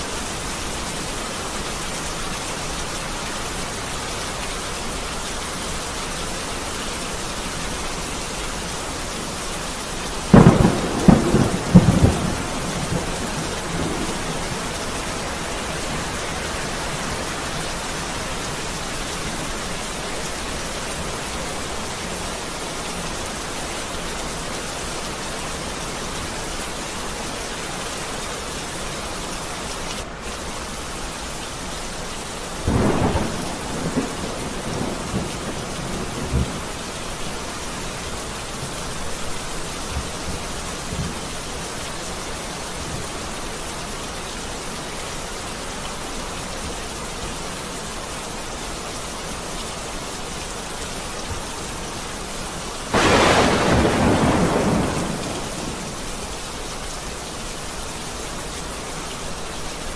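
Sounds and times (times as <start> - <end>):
steady rain falling: 0.0 - 59.9
thunder cracking: 10.3 - 18.2, 32.7 - 36.6, 52.9 - 56.1.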